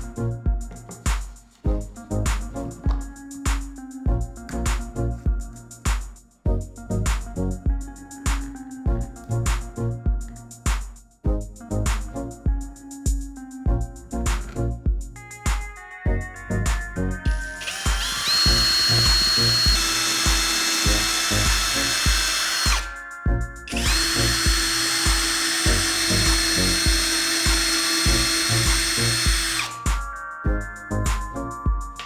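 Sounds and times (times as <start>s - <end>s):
background music with beat: 0.0s - 32.0s
electric power drill whining: 17.3s - 23.0s, 23.7s - 29.9s.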